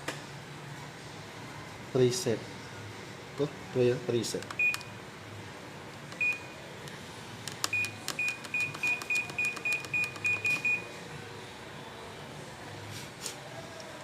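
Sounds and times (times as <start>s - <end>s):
washing machine panel beeping: 4.6s - 4.9s, 6.2s - 6.6s, 7.6s - 10.9s.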